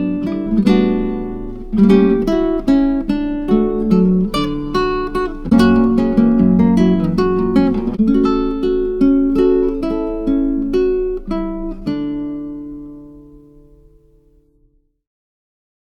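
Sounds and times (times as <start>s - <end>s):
acoustic guitar music: 0.0s - 14.7s.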